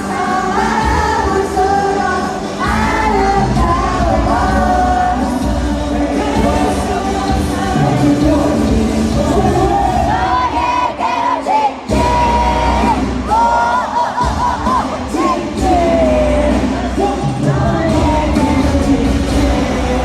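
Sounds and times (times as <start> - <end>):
person singing: 0.0 - 20.0
pop song through sound system: 0.0 - 20.0
crowd cheering: 9.3 - 17.7
bass beat: 14.2 - 20.0.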